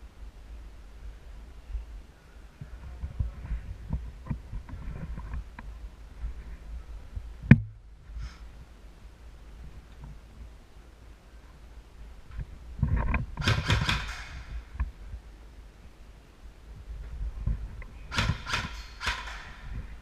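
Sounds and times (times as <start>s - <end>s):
faint rustling of movement: 1.2s - 13.4s, 16.5s - 18.1s
low thumps: 2.8s - 8.0s
sharp loud snap: 13.4s - 14.5s, 18.1s - 19.6s.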